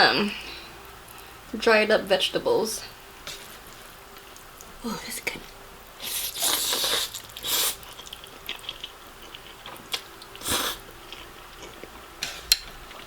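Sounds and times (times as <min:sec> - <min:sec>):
soft chewing clicks: 0:03.3 - 0:13.0
slurping noodles: 0:06.0 - 0:08.8, 0:09.8 - 0:10.9.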